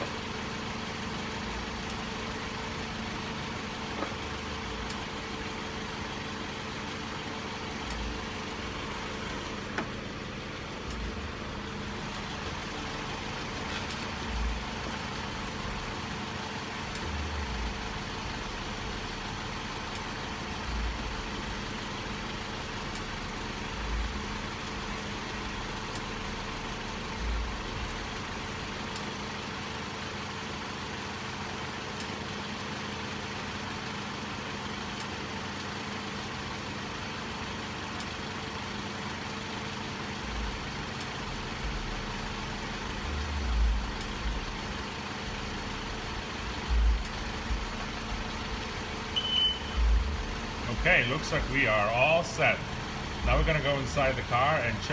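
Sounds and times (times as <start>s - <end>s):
car engine idling: 0.0s - 54.9s
short beep: 49.1s - 49.9s.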